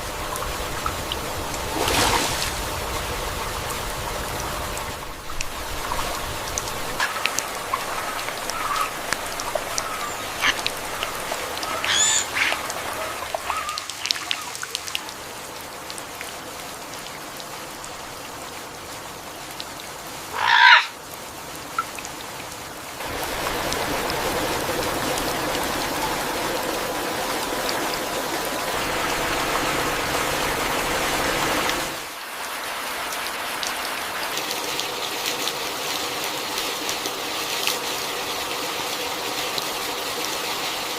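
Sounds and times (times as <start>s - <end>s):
steady rain hiss: 0.0s - 40.9s
animal calls: 7.0s - 14.6s, 20.3s - 21.0s.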